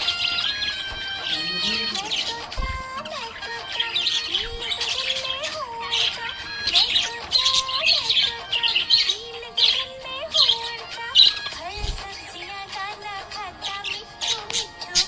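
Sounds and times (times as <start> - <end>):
background music: 0.0 - 15.0
budgerigar chirping and warbling: 0.0 - 15.0.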